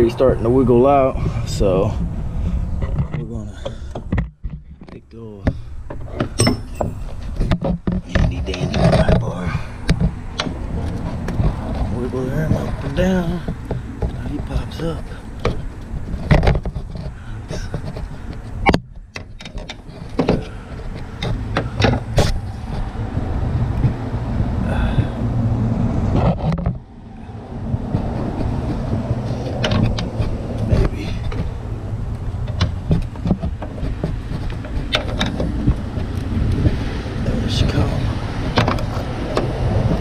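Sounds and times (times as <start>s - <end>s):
low rumble: 0.0s - 3.6s, 19.8s - 40.0s
pry bar clinking on metal hinge: 6.4s - 7.1s.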